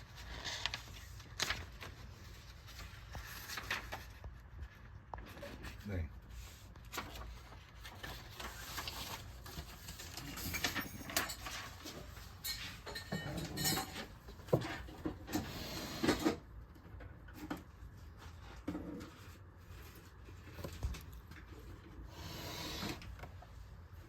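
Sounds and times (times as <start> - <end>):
objects clicking and rustling: 7.0 - 15.5.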